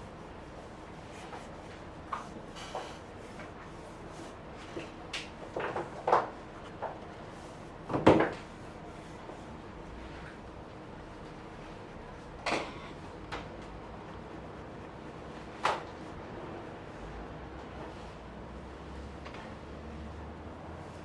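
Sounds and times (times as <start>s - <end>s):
objects knocking on desk: 7.9s - 8.4s.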